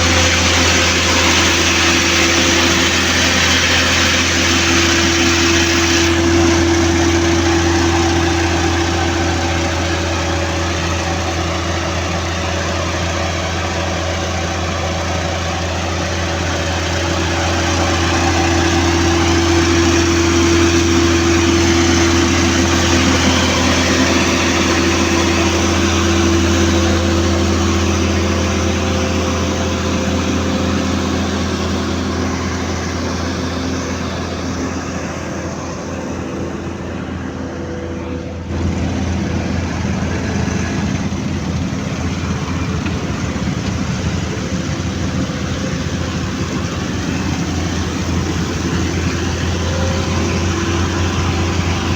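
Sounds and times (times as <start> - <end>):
construction machine engine idling: 0.0 - 51.9.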